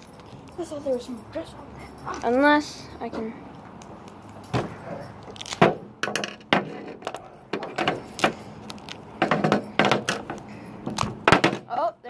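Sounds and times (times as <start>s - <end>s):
tape rustling and pulling: 3.8s - 11.6s.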